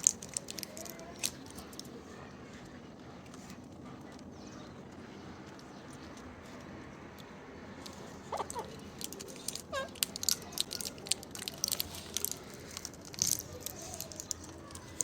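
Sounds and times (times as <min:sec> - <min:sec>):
parrots crunching food: 0:00.0 - 0:04.3, 0:05.6 - 0:15.0
parrot squeaky calls: 0:09.7 - 0:10.0.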